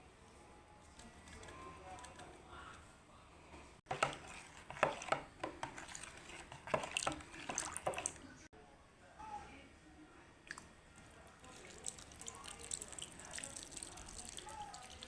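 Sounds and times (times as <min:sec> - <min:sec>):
liquid sounds: 0:03.9 - 0:08.4, 0:10.5 - 0:15.0.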